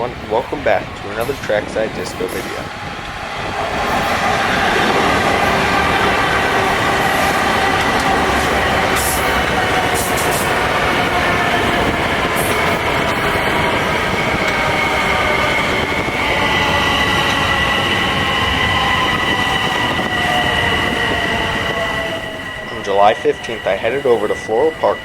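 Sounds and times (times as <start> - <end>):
train wheels on rails: 0.0 - 25.0
high-pitched tones: 15.2 - 25.0.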